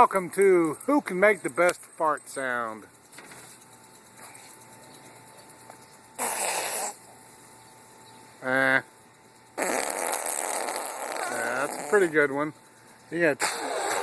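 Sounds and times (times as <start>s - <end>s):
person imitating fart sounds: 6.2s - 7.0s, 9.6s - 12.1s, 13.4s - 14.0s.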